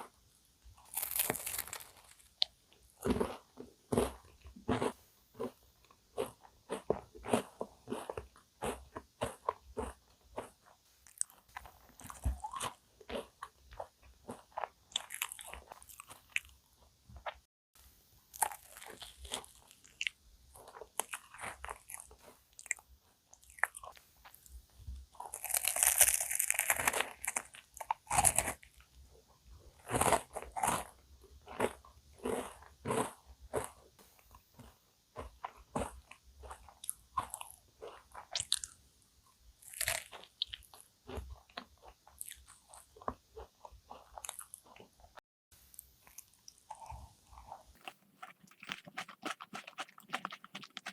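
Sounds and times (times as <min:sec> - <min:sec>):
crunchy pastry being eaten: 0:00.8 - 0:16.6, 0:18.3 - 0:24.5, 0:25.1 - 0:29.0, 0:29.7 - 0:38.8, 0:39.6 - 0:50.9.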